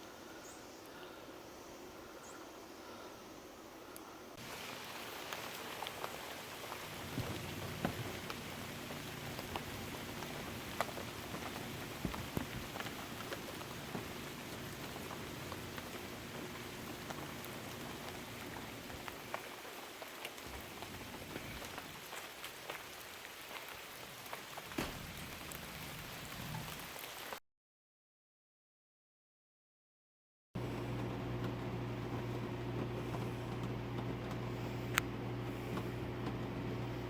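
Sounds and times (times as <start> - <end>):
low steady hum: 0.0 - 22.0, 30.6 - 37.0
campfire crackling: 3.8 - 27.4, 30.6 - 37.0.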